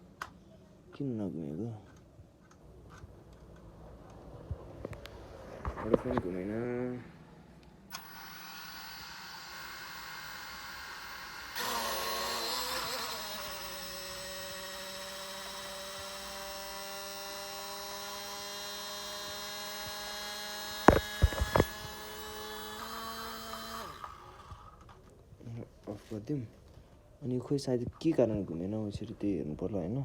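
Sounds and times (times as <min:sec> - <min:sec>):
drone motors whirring: 0:07.9 - 0:25.0.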